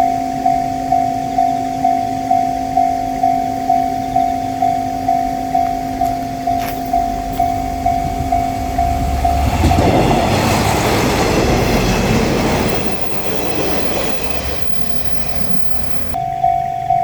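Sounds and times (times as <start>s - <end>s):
level-crossing bell ringing: 0.0s - 17.0s
diesel train passing: 3.2s - 16.5s
wheels clattering over rail joints: 6.9s - 16.2s.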